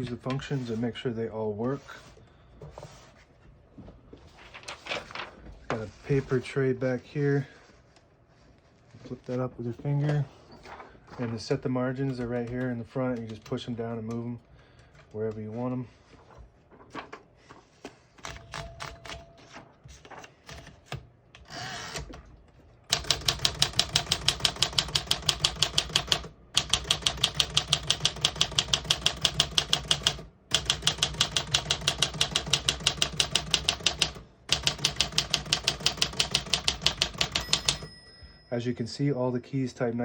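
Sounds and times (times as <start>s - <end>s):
typewriter keys typing: 18.2s - 19.6s, 22.9s - 37.9s
typewriter light clicks and rasp: 22.9s - 37.9s.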